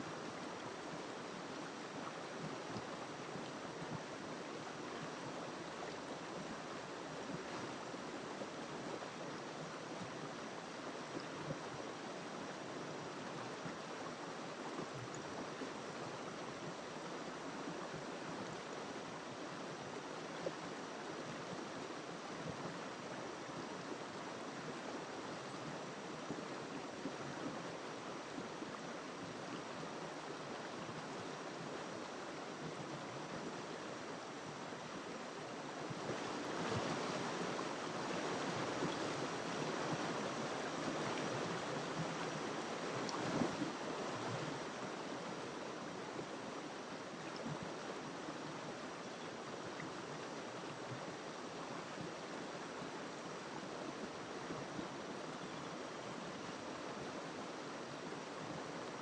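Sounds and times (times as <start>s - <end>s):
river water flowing: 0.0s - 59.0s.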